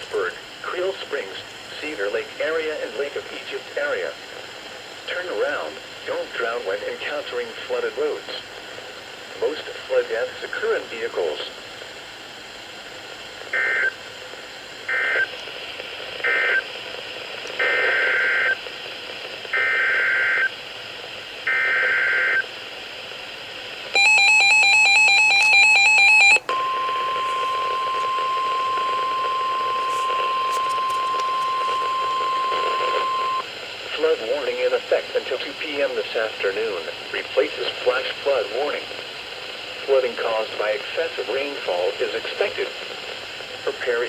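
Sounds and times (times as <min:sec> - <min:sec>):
steady warning alarm tone: 0:24.0 - 0:33.4
rapidly alternating tones: 0:25.0 - 0:33.4.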